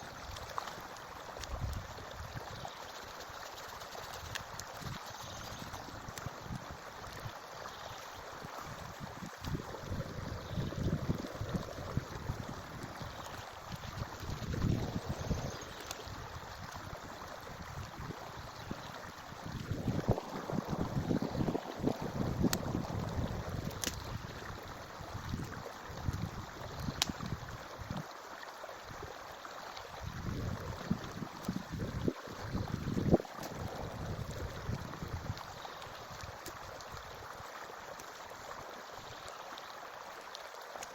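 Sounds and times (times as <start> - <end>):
stream flowing: 0.0 - 40.9
wind buffeting microphone: 8.4 - 28.0, 30.0 - 35.5.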